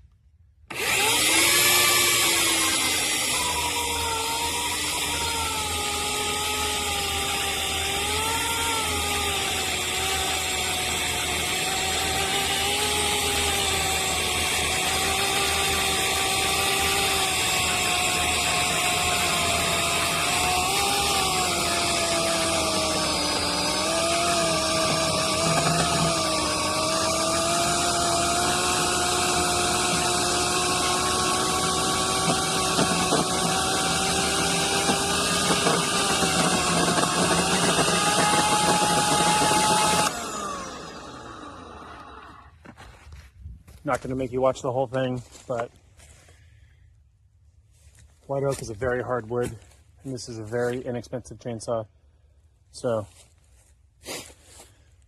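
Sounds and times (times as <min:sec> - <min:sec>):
electric chainsaw cutting log: 0:00.7 - 0:42.6.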